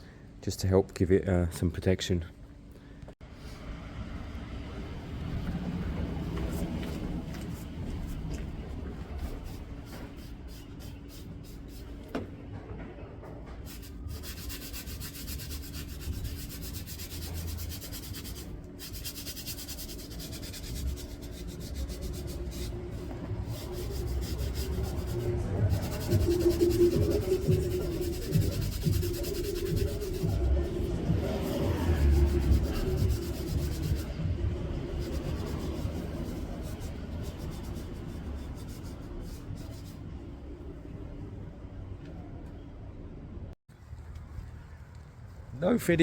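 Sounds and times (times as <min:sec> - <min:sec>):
sandpaper rubbing on metal: 0:13.6 - 0:40.0.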